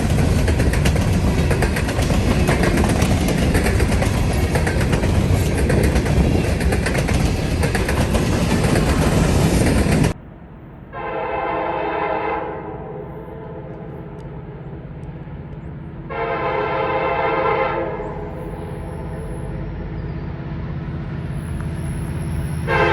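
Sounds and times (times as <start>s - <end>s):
train wheels clattering on rails: 0.0s - 10.2s
locomotive engine rumble: 0.0s - 12.1s, 12.7s - 22.9s
locomotive air horn blasts: 11.0s - 13.8s, 16.1s - 18.8s, 22.6s - 22.9s.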